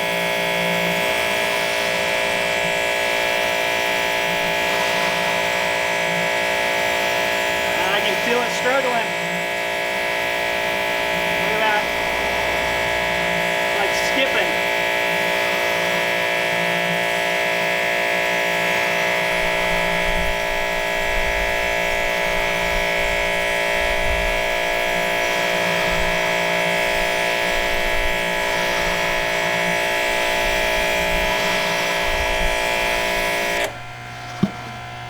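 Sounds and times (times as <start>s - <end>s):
pressure washer whining: 0.0s - 35.0s
water jets spraying: 10.8s - 15.0s.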